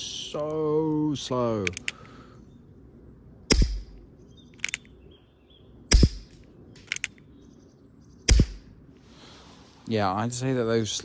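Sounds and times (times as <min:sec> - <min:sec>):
quick pair of clicks: 0:01.6 - 0:02.1, 0:03.5 - 0:05.0, 0:05.9 - 0:07.3, 0:08.3 - 0:08.7
air pistol shots: 0:03.5 - 0:04.0, 0:05.9 - 0:07.1, 0:08.3 - 0:08.8.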